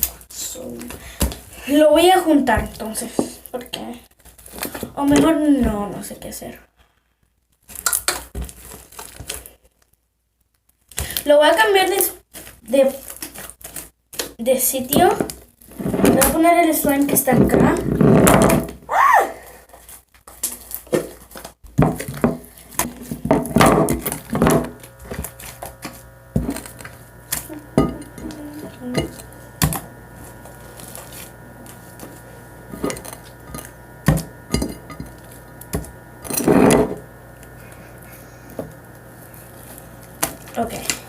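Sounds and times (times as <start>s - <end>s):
faint steady hum: 21.4s - 41.0s.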